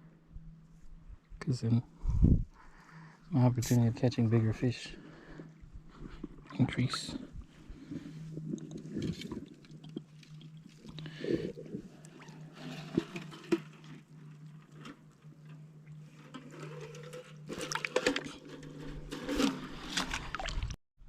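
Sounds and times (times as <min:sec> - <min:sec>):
steady low hum: 0:00.0 - 0:20.1
water sloshing: 0:06.0 - 0:20.8
splashing and rustling: 0:06.1 - 0:20.8.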